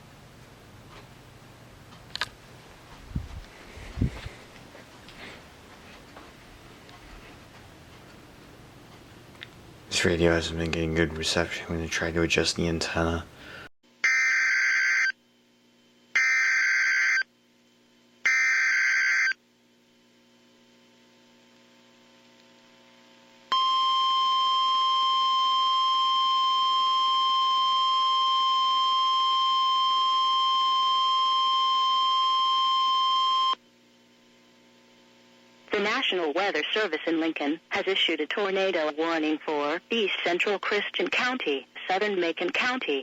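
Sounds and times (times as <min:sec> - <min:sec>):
steady warning alarm tone: 0:14.0 - 0:15.2, 0:16.2 - 0:17.3, 0:18.3 - 0:19.4.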